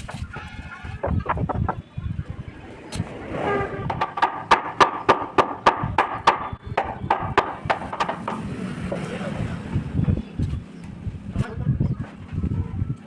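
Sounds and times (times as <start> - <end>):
hammer tapping wood: 4.0 - 8.4.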